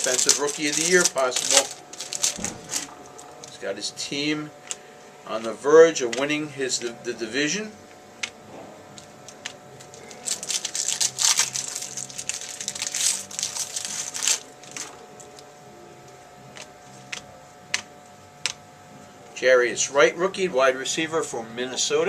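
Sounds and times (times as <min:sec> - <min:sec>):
cards rustling and clicking: 0:00.0 - 0:03.6, 0:08.2 - 0:18.6
wrapper crinkling and tearing: 0:00.0 - 0:03.6, 0:09.0 - 0:15.5.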